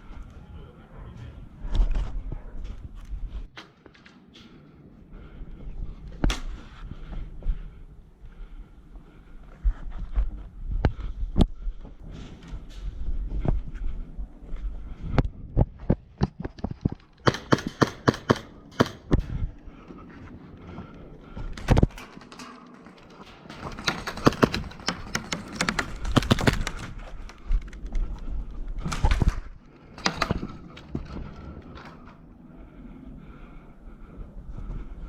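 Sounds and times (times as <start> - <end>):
airsoft guns firing: 17.2 - 19.1.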